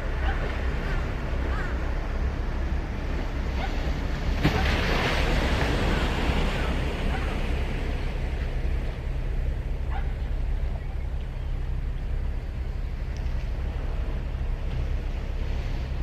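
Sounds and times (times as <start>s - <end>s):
low rumble of the sea: 0.0s - 16.0s
wave breaking on a beach: 2.6s - 9.2s.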